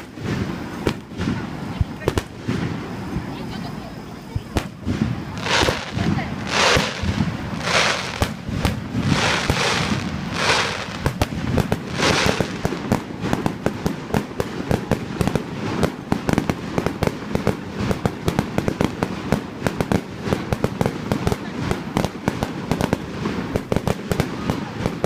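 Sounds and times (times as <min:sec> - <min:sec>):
rapid crackling firework pops: 0:00.0 - 0:25.0
hissing aerial shells bursting: 0:04.6 - 0:14.4.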